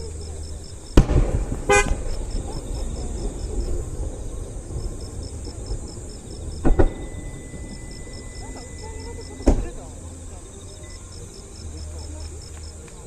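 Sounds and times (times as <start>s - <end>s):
fireworks rumbling: 0.0s - 13.0s
sharp fireworks bang: 0.9s - 10.0s.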